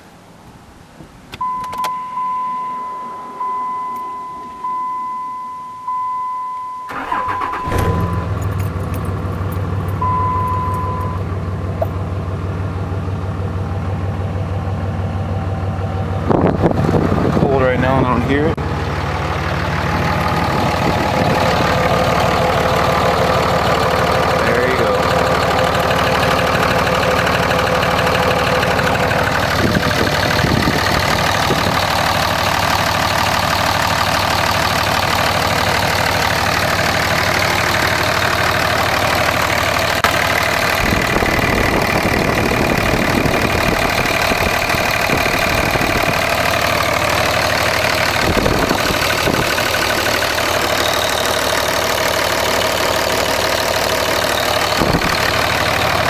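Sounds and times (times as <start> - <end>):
diesel engine idling: 1.4 - 56.0
engine knocking: 18.6 - 56.0.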